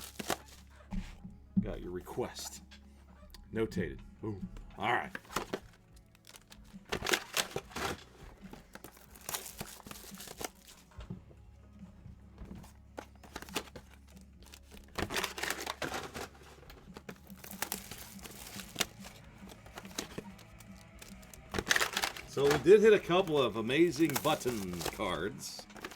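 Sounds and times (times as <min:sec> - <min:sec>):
wrapper crinkling and tearing: 0:00.0 - 0:00.6, 0:05.1 - 0:10.9, 0:13.0 - 0:25.9
faint background music: 0:00.0 - 0:25.9.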